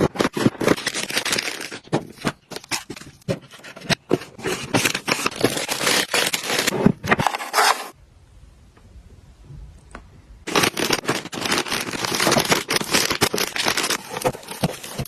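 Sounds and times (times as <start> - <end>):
packaging crinkling and clicks: 0.0 - 3.1, 10.5 - 15.0.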